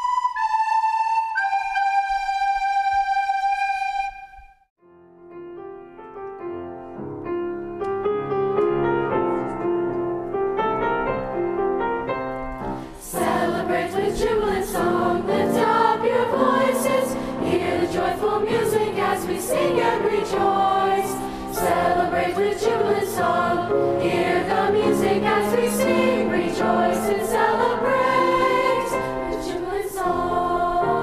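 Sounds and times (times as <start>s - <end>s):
held flute note: 0.0s - 4.7s
piano playing: 4.8s - 31.0s
choir singing: 12.8s - 31.0s.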